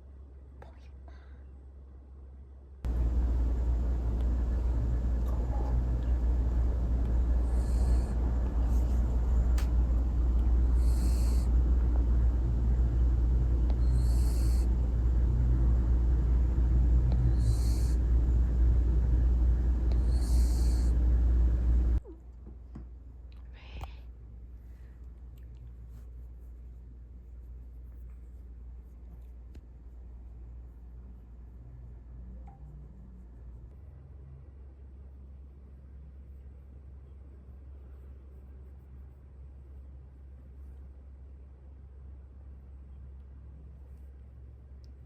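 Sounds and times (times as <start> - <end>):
cat snoring: 7.1 - 9.0, 10.6 - 11.6, 13.7 - 14.8, 17.1 - 18.1, 19.9 - 21.0.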